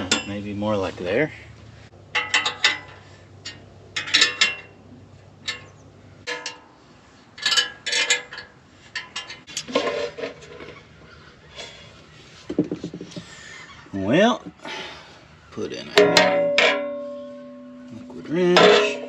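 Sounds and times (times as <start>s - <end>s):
metal tools clanking: 0.0s - 0.6s, 2.1s - 4.8s, 5.4s - 10.8s, 15.9s - 19.0s.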